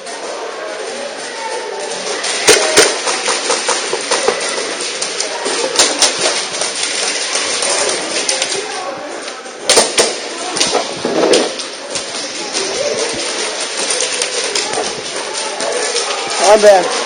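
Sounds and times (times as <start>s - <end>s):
steady rustling: 0.0s - 17.0s
airsoft guns firing: 2.3s - 4.4s, 9.7s - 10.7s.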